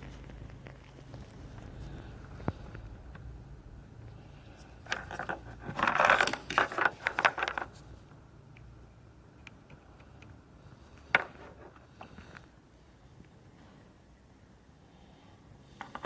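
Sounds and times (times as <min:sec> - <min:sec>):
clattering and scraping: 0:00.0 - 0:07.9.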